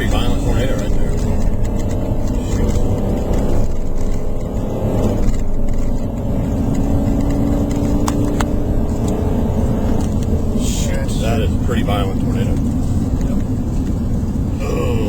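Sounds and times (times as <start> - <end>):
car engine hum: 0.0 - 15.0
tyre and road rumble: 0.0 - 15.0.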